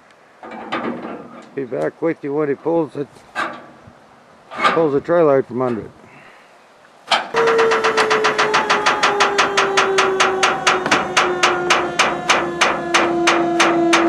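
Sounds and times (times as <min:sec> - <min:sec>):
regular mechanical clacking: 0:07.1 - 0:14.0
trailer motor hum: 0:07.4 - 0:14.0.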